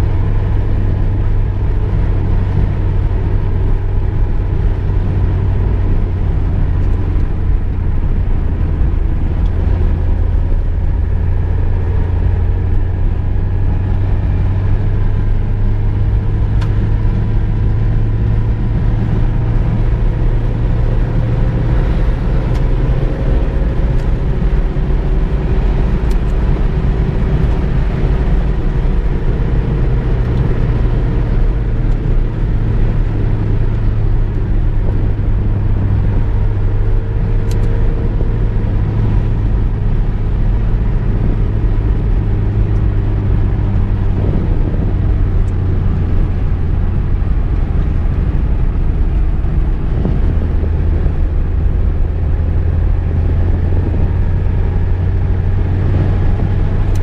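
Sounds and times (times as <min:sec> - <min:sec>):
car engine: 0:00.0 - 0:57.0
road rumble: 0:00.0 - 0:57.0.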